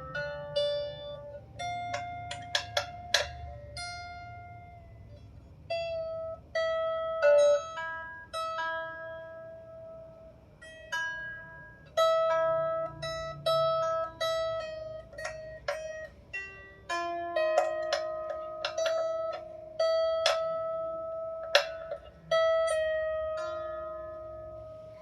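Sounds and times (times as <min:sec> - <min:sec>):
harp strings plucked: 0:00.0 - 0:04.6, 0:10.6 - 0:25.0.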